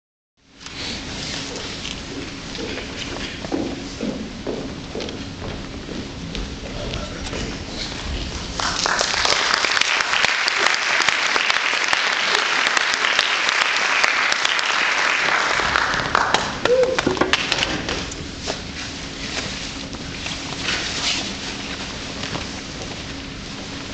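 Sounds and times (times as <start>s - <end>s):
audience applauding: 8.4s - 18.0s.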